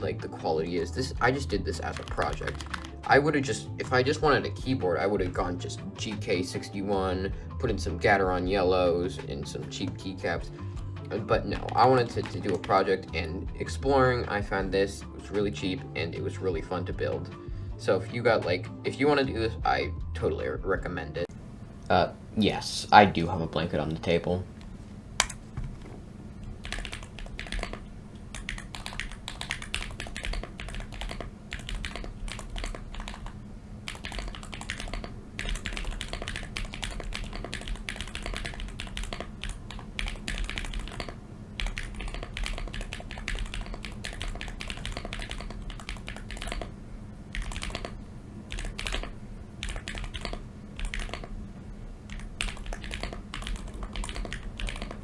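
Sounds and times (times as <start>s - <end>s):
keyboard typing: 1.8s - 3.0s, 11.5s - 12.9s, 23.1s - 55.0s.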